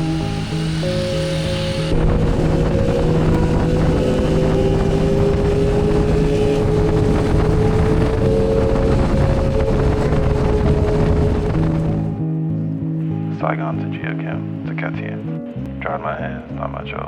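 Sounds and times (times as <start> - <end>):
motorbike engine accelerating: 0.0 - 12.2
wind rushing over microphone: 0.0 - 12.2.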